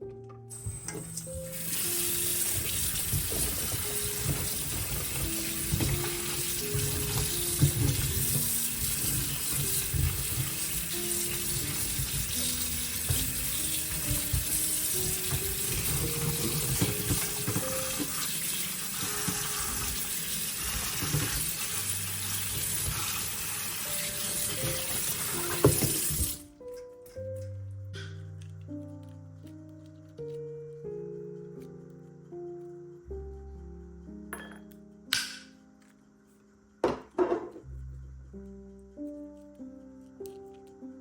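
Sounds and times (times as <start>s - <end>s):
soft background music: 0.0s - 41.0s
tap water running into sink: 0.5s - 26.4s.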